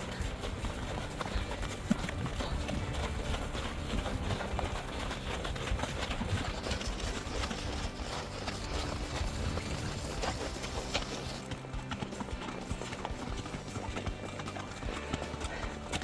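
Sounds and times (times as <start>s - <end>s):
horse hooves clip-clopping: 0.0s - 16.0s.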